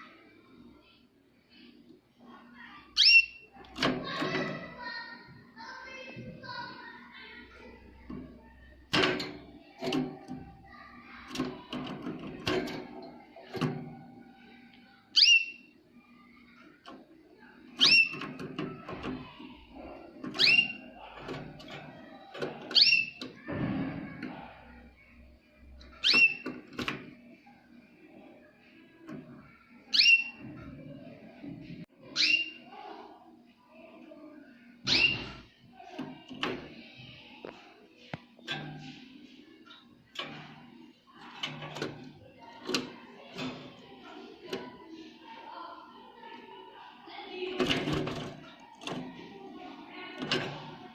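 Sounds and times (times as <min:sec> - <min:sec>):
canary chirping: 0:02.9 - 0:05.0, 0:14.9 - 0:15.8, 0:17.4 - 0:23.4, 0:25.9 - 0:26.9, 0:29.8 - 0:30.5, 0:32.0 - 0:32.7, 0:34.8 - 0:35.9.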